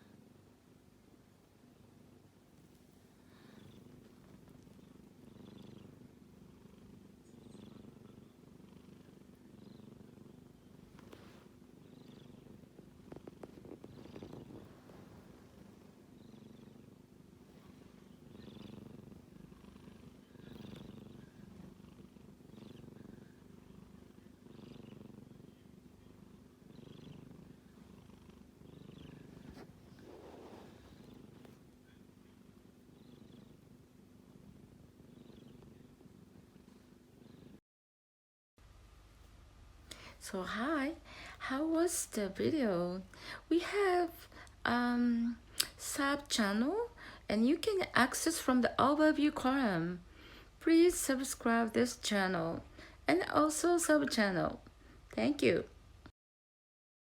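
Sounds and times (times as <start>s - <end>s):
kitten snoring: 2.8s - 37.6s.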